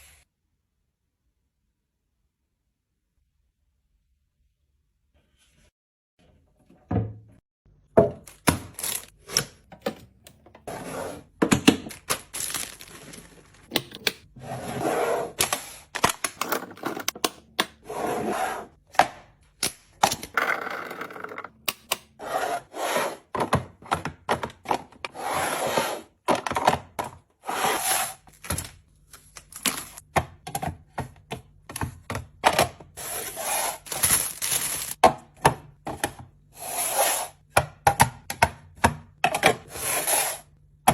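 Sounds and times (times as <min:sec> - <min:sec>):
packaging rustling: 0:11.9 - 0:13.7, 0:33.8 - 0:35.0.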